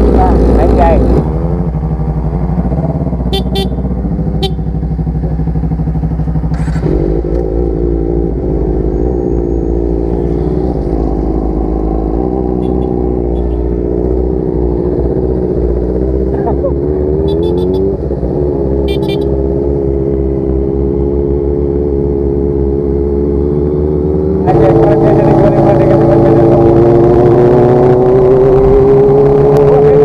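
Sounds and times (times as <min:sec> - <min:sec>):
motorcycle engine running: 0:00.0 - 0:30.0.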